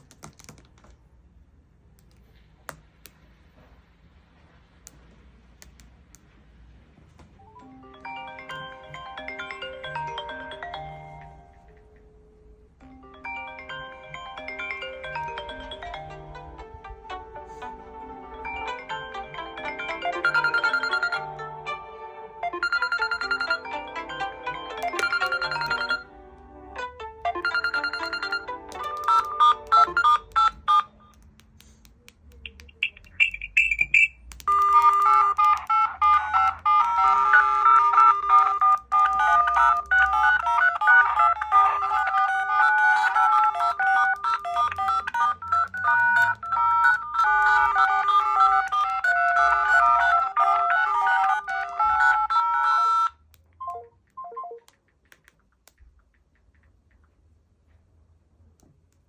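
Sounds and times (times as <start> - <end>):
phone ringtone melody: 7.4 - 12.2, 12.8 - 26.2, 26.8 - 31.1, 32.8 - 54.7.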